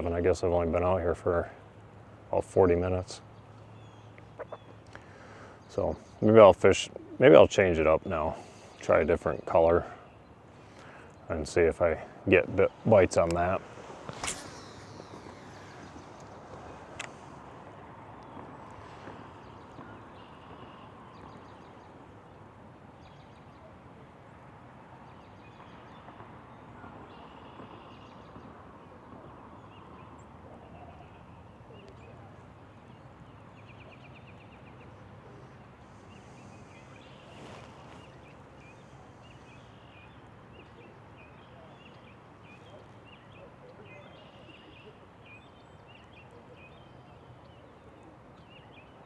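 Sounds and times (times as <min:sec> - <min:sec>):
light rain hiss: 0:00.0 - 0:21.6, 0:35.6 - 0:40.4
small birds chirping and trilling: 0:02.3 - 0:22.4, 0:29.4 - 0:49.0.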